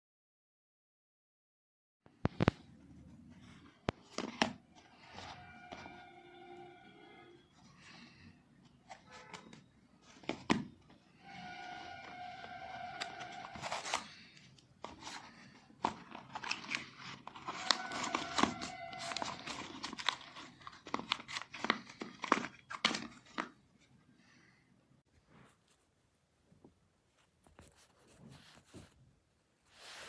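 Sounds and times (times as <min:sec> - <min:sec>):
squeaky rubbing tone: 0:04.6 - 0:08.2, 0:11.1 - 0:14.2, 0:17.4 - 0:19.8
crinkling handling noise: 0:07.5 - 0:24.0.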